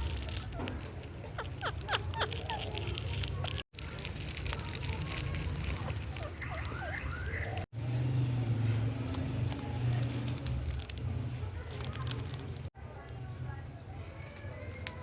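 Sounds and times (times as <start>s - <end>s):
parrot whistled chirps: 6.2s - 7.6s.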